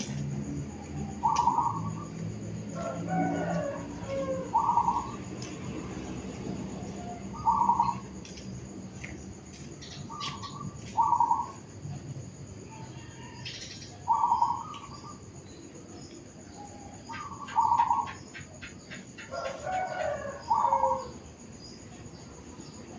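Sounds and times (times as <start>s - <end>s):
dove cooing: 0.8s - 8.2s, 10.2s - 11.6s, 14.0s - 15.2s, 16.5s - 21.2s
small birds chirping: 7.3s - 11.6s.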